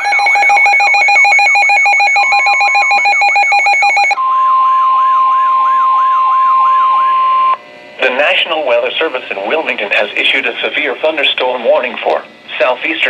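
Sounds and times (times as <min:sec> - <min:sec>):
pulsing two-tone beeping: 0:00.0 - 0:07.6
rising siren-like whoop: 0:00.0 - 0:07.6
steady warning alarm tone: 0:00.0 - 0:11.3.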